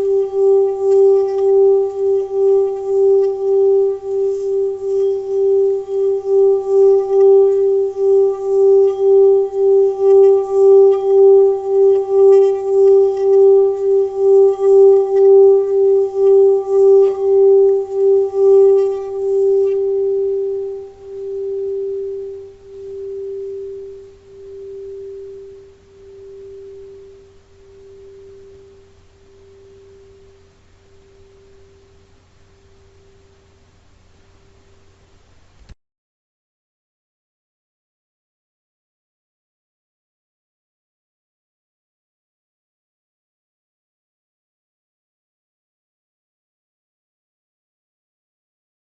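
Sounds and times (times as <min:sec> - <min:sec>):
singing bowl humming: 0:00.0 - 0:35.3.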